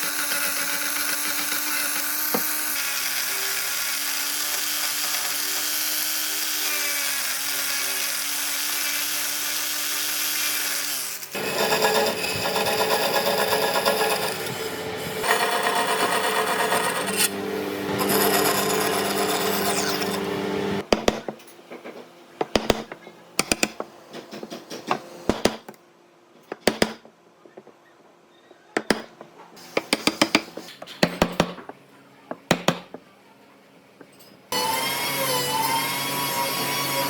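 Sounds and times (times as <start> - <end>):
power tool running: 11.0 - 20.8, 34.5 - 37.0
tools knocking on wood: 20.8 - 25.8, 28.8 - 33.1.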